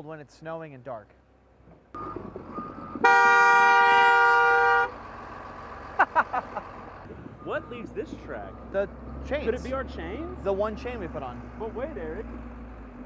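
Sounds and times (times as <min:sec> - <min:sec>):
background vehicle noise: 0:00.0 - 0:13.0
vehicle horn blast: 0:03.0 - 0:05.0.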